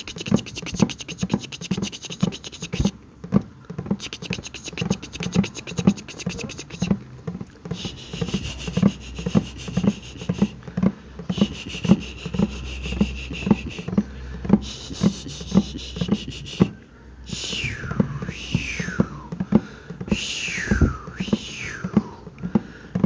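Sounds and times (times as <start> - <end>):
hiss: 0.0 - 2.9, 4.0 - 7.0, 7.6 - 10.6, 11.3 - 14.0, 14.6 - 16.7, 20.1 - 22.3
rhythmic soft tapping and rubbing: 0.0 - 23.0.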